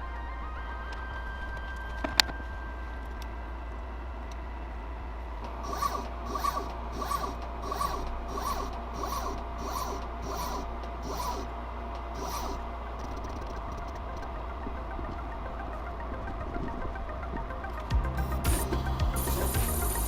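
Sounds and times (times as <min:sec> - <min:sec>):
steady low hum: 0:02.0 - 0:20.0
stepper motors whirring: 0:05.4 - 0:16.4, 0:18.2 - 0:20.0.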